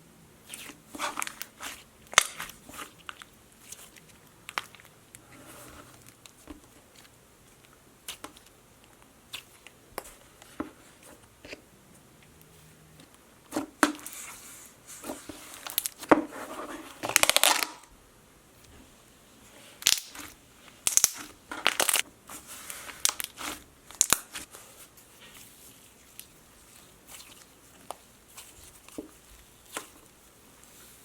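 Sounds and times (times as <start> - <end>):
slime squishing and popping: 19.8 - 20.2, 20.8 - 22.0.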